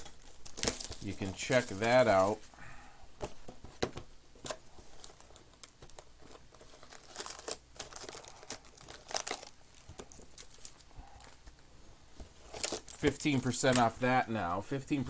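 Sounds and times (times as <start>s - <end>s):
plastic wrapping crinkling and tearing: 0.0s - 2.4s, 4.4s - 11.6s, 12.4s - 14.0s.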